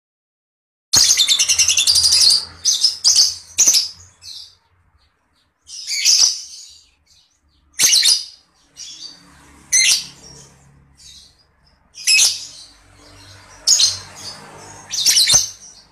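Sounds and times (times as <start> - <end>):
lovebird chirping shrilly: 1.0 - 4.6, 5.7 - 7.0, 7.6 - 11.4, 12.0 - 15.9.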